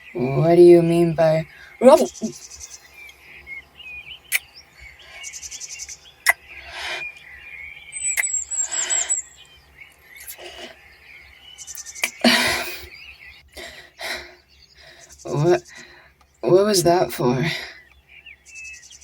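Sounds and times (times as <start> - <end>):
small birds chirping and trilling: 0.0 - 19.0
soft breathy hisses: 8.5 - 9.3.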